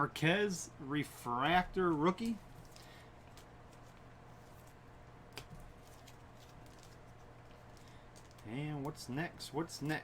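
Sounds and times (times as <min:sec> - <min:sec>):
low steady hum: 0:00.0 - 0:10.0
trading cards being flipped: 0:01.8 - 0:09.0.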